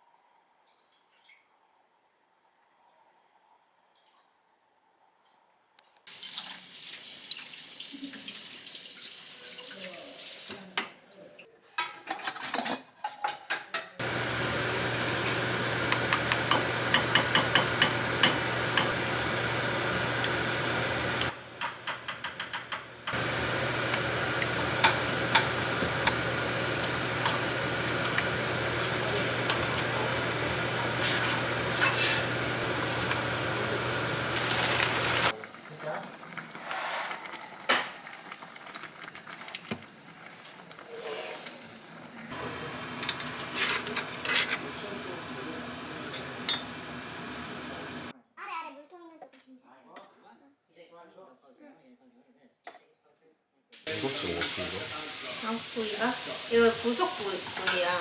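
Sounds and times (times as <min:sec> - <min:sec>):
dishes and cutlery clinking: 0:11.8 - 0:14.0, 0:14.9 - 0:19.0, 0:23.9 - 0:33.3, 0:43.0 - 0:44.7.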